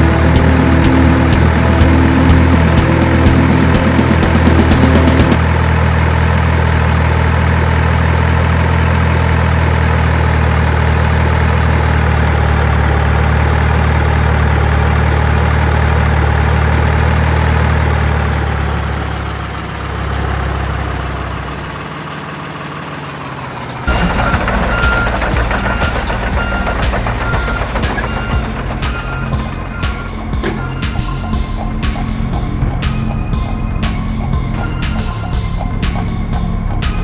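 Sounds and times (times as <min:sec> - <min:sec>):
music: 0:00.0 - 0:05.4, 0:23.9 - 0:37.0
truck engine idling: 0:00.0 - 0:37.0.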